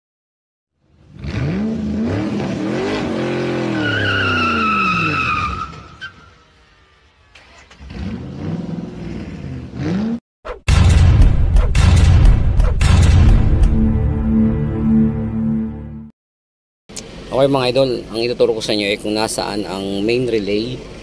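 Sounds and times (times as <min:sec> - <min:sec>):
car engine revving: 0:00.8 - 0:10.2
tyre squeal: 0:03.5 - 0:06.5.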